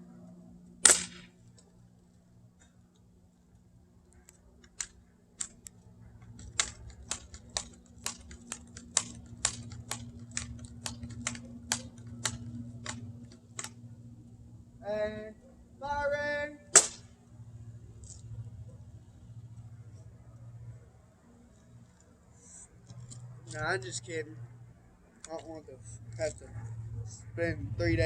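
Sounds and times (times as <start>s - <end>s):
bb gun clicks: 0.8s - 1.6s, 4.6s - 13.8s.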